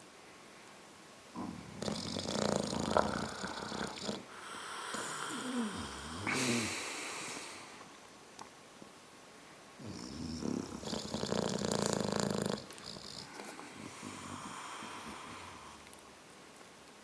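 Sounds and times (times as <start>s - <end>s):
person snoring: 1.4s - 7.7s, 9.8s - 15.9s.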